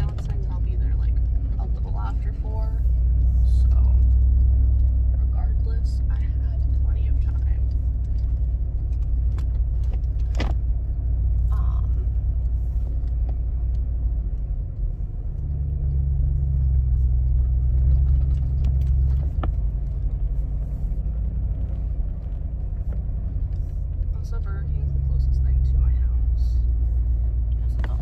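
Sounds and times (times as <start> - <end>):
car engine and exhaust rumbling: 0.0 - 28.0.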